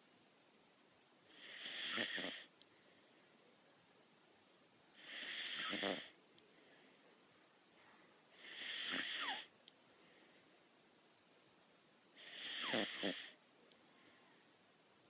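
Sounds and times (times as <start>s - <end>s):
puppy snoring through nose: 1.3s - 2.5s, 5.0s - 6.2s, 8.4s - 9.5s, 12.2s - 13.4s.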